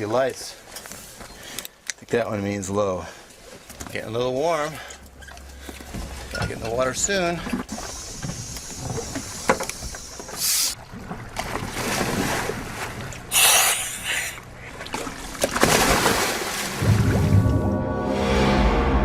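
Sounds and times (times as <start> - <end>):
wind: 0.0 - 19.0
water noise: 3.2 - 19.0
faint low motor hum: 3.5 - 16.8
rushing splashing bursts: 11.7 - 17.7.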